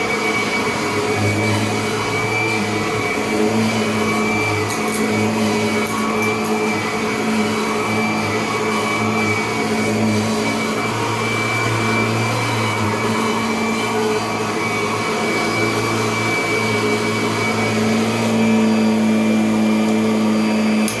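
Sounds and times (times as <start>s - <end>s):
vacuum cleaner running: 0.0s - 21.0s.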